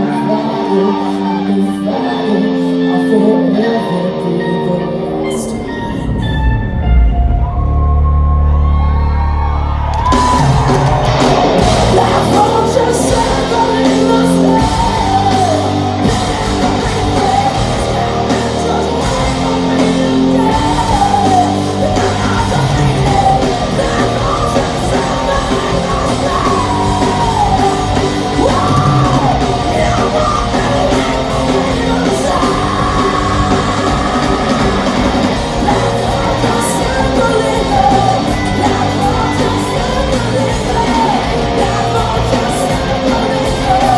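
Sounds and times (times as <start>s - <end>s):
live hard rock band: 0.0s - 43.9s.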